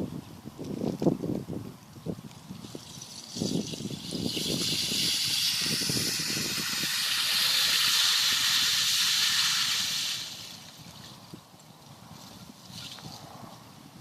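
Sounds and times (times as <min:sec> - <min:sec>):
drifting ice hissing and crackling: 0:02.5 - 0:11.0.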